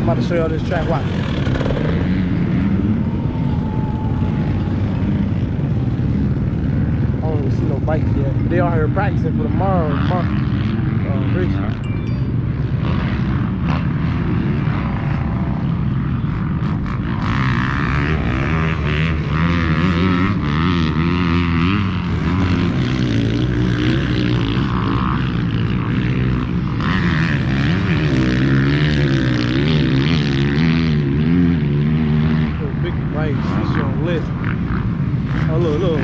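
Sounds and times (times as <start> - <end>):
dirt bike engine revving: 0.0 - 7.2.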